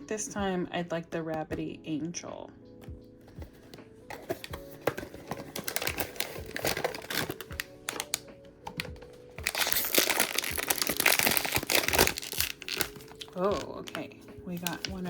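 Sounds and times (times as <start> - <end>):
packaging clicks: 3.3 - 14.0, 14.6 - 15.0
wrapping crinkling: 3.5 - 15.0.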